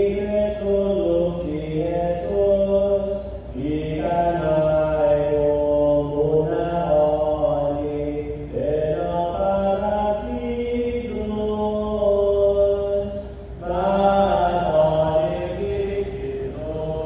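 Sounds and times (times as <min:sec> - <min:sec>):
voices singing a slow hymn: 0:00.0 - 0:17.0.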